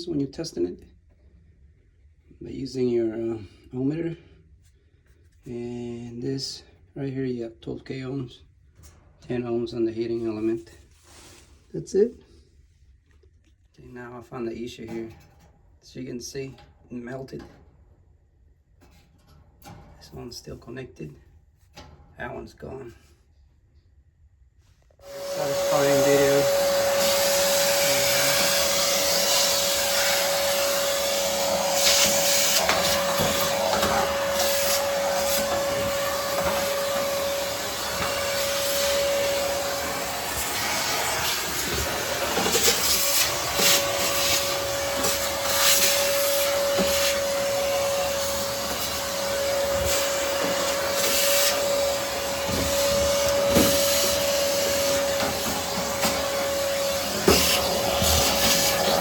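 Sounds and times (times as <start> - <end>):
vacuum cleaner whining: 25.0 - 59.0
nozzle knocking and scraping: 25.1 - 59.0.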